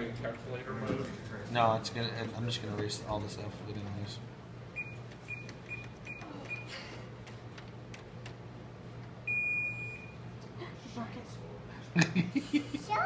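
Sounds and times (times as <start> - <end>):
cash register keypad beeps: 4.8 - 6.7, 9.3 - 10.2.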